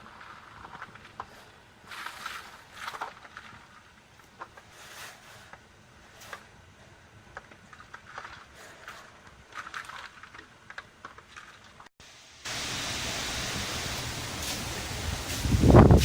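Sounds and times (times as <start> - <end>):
wind and driving rain: 12.0 - 16.0
wind buffeting microphone: 12.6 - 16.0.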